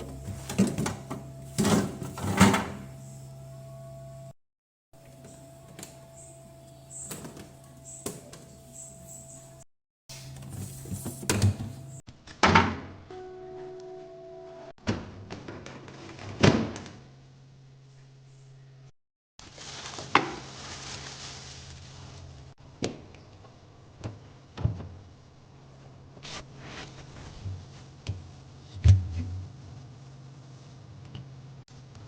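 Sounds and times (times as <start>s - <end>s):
faint steady hum: 0.0s - 4.4s.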